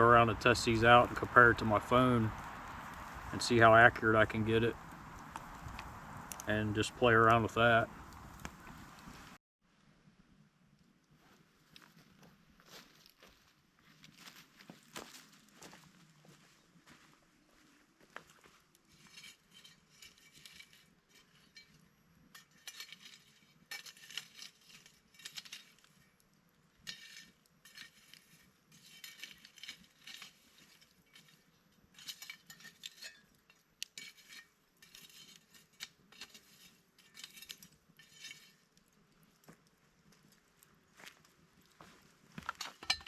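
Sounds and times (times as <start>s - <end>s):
footsteps crunching in snow: 0.0s - 6.3s, 7.1s - 9.4s, 11.7s - 19.2s, 40.9s - 42.8s.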